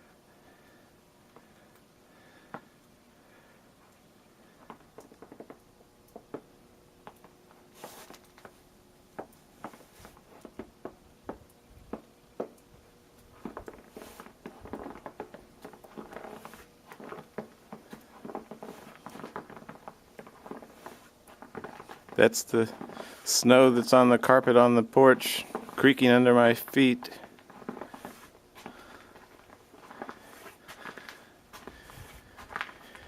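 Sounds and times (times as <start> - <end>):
footsteps crunching on snow: 13.4 - 33.0.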